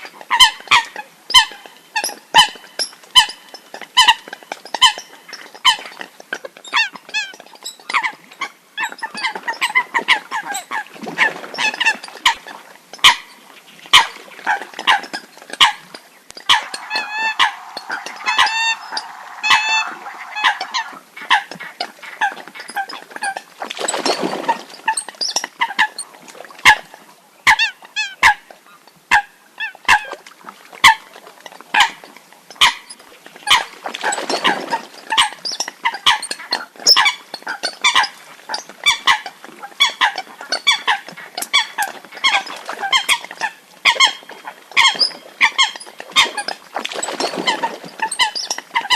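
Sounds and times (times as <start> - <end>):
water hens honking calls: 6.8 - 28.4, 32.6 - 48.9.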